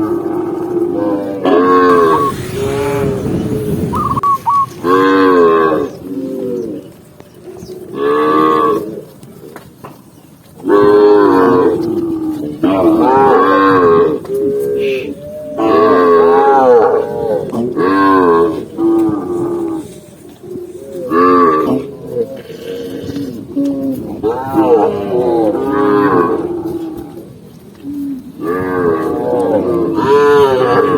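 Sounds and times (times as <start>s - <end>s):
cow mooing: 0.0s - 6.0s, 23.9s - 27.1s, 28.4s - 30.9s.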